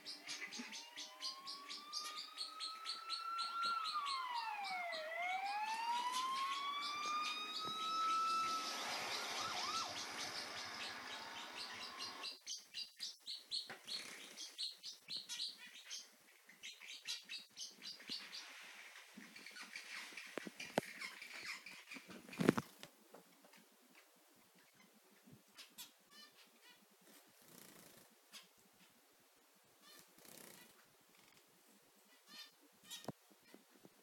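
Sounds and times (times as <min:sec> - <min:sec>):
parrotlets chirping: 0:00.0 - 0:22.6, 0:25.6 - 0:26.8, 0:28.3 - 0:29.0, 0:32.1 - 0:33.6
siren wailing: 0:00.2 - 0:12.4.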